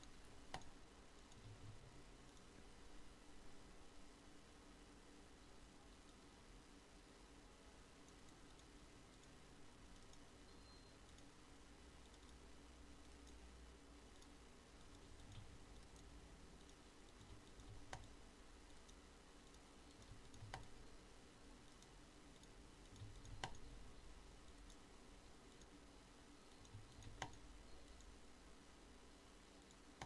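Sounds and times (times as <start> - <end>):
faint sharp clicks: 0.0 - 2.7, 8.0 - 10.3, 11.0 - 11.4, 12.0 - 13.5, 14.1 - 20.8, 21.6 - 23.7, 25.5 - 25.8, 26.5 - 28.2.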